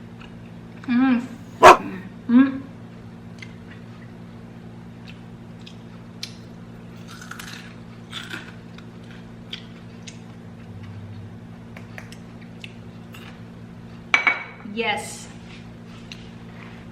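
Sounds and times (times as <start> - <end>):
crunching and chewing: 7.0 - 11.1.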